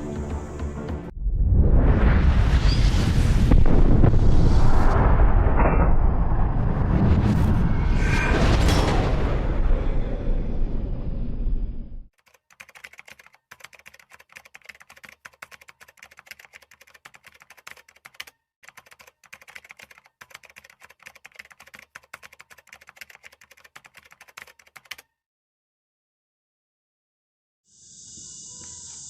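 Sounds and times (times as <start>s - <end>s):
keyboard typing clicks: 12.2s - 25.1s.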